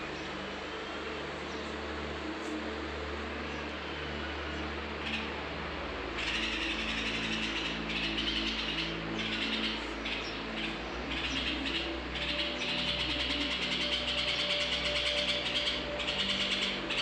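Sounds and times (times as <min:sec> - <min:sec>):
low steady hum: 0:00.0 - 0:17.0
nestlings begging calls: 0:06.2 - 0:17.0.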